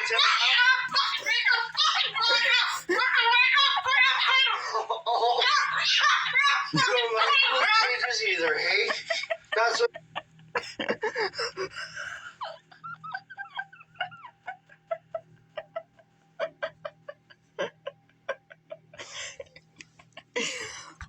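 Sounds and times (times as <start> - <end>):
person laughing hard: 0.9 - 3.2, 9.0 - 21.0.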